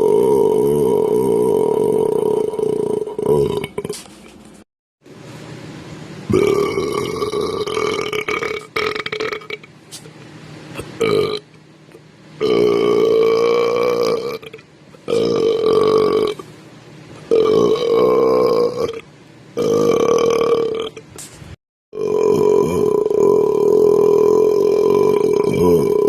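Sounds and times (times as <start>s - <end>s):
person burping: 0.0s - 4.0s, 6.3s - 9.7s, 10.8s - 11.5s, 12.4s - 16.5s, 17.2s - 19.0s, 19.6s - 21.1s, 21.9s - 26.0s.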